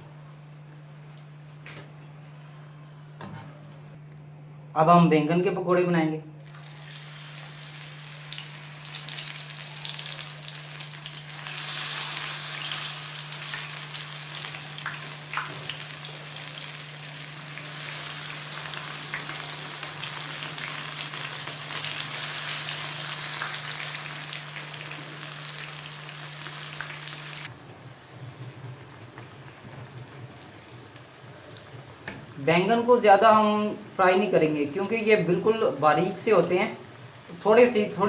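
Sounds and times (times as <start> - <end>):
eggplant deep-frying in oil: 6.4 - 38.0.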